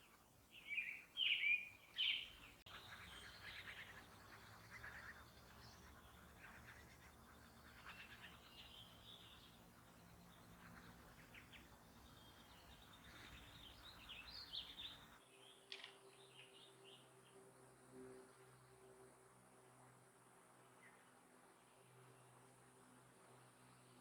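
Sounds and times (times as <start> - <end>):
birds chirping and calling: 0.6 - 15.2
low steady background rumble: 2.3 - 15.2.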